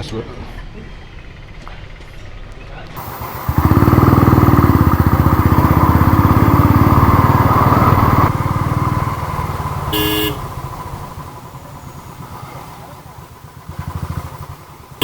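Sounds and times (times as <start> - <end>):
motorcycle engine running: 3.0 - 15.0
short horn beep: 9.7 - 10.8.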